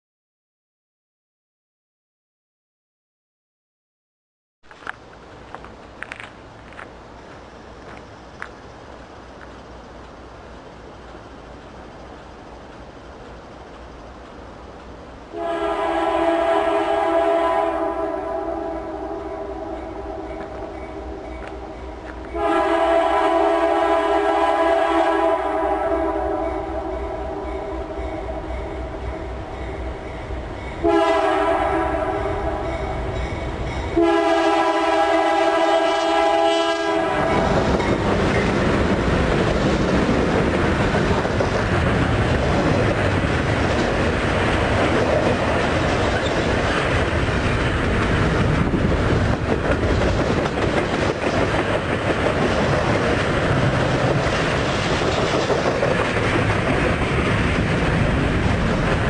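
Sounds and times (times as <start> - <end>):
train rumbling past on rails: 4.7 - 59.0
locomotive horn blasts: 15.3 - 21.7, 22.3 - 29.3, 30.8 - 33.2, 33.9 - 37.6.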